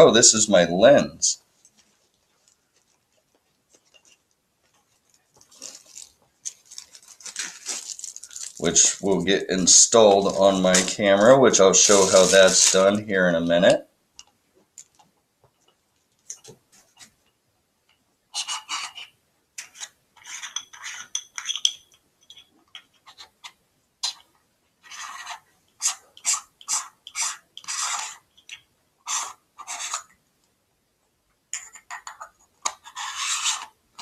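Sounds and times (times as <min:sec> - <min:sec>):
rustling of packaging: 0:01.5 - 0:09.4, 0:10.1 - 0:13.1.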